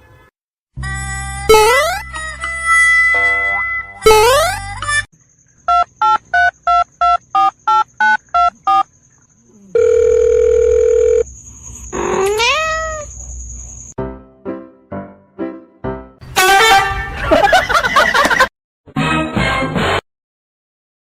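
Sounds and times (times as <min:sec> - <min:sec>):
telephone keypad beeps: 0:05.7 - 0:08.8
steady phone tone: 0:09.7 - 0:11.3
cat meowing: 0:12.0 - 0:13.1.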